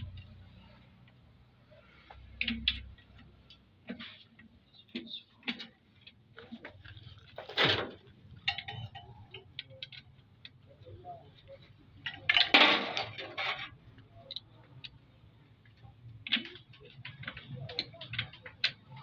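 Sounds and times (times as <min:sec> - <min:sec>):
metal engine parts clicking: 0:04.4 - 0:10.8, 0:15.6 - 0:19.0.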